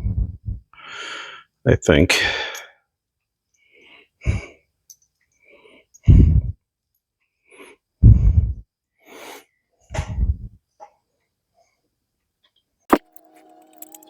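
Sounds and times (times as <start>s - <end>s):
heavy puffs of breath: 0.0s - 1.5s.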